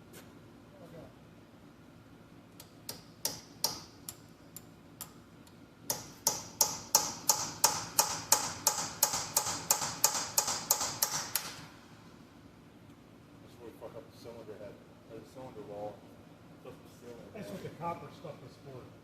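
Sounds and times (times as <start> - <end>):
hammer striking metal punch: 2.9 - 3.9, 5.9 - 11.5.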